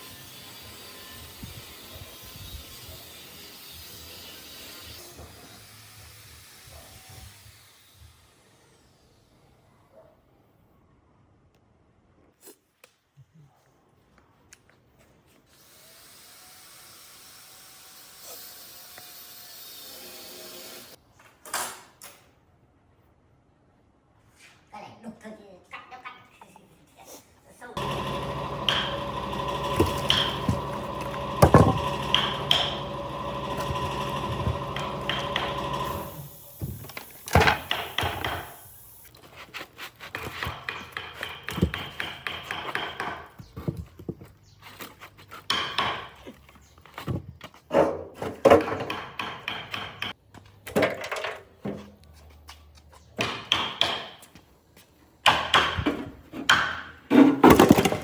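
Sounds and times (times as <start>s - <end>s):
wood pieces knocking and clattering: 27.8s - 35.8s, 56.5s - 58.0s
machine humming: 27.8s - 36.5s.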